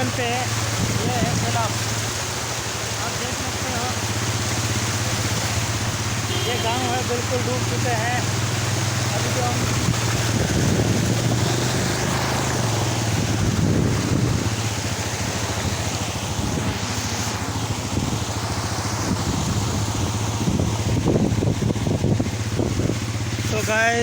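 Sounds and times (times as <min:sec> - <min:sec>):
vehicle engine humming: 0:00.0 - 0:24.0
wind rushing over microphone: 0:00.7 - 0:01.5, 0:09.6 - 0:23.6.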